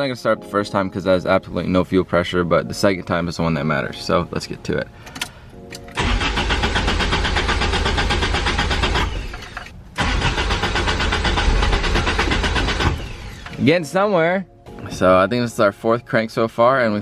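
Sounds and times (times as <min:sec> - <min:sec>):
engine starter cranking: 0:05.1 - 0:13.6.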